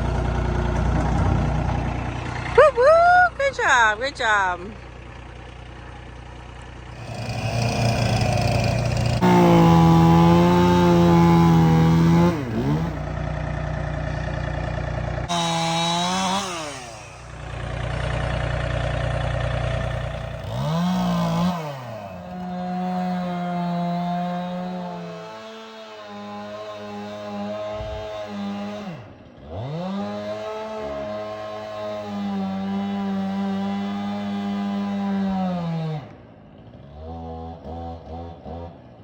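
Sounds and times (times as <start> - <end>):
low engine idling: 0.0 - 22.9
chainsaw revving: 6.8 - 39.0.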